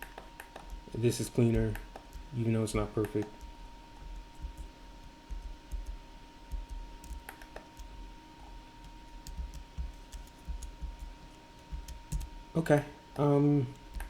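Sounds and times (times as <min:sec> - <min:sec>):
keyboard and mouse clicks: 0:00.0 - 0:00.8.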